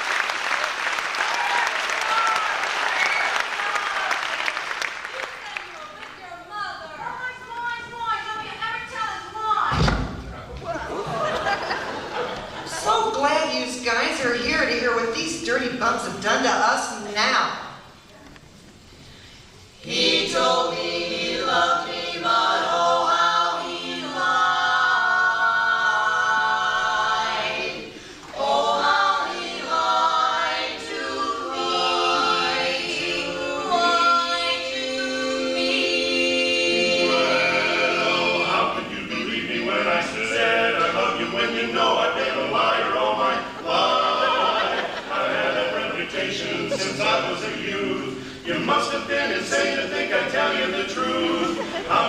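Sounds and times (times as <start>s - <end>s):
close-harmony group singing: 10.9s - 12.8s, 19.8s - 52.0s.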